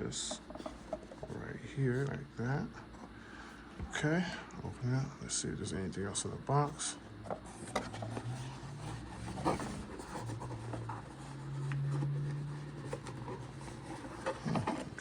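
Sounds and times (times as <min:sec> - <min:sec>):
low steady hum: 0:00.0 - 0:15.0
cardboard box and paper rummaging: 0:07.3 - 0:15.0.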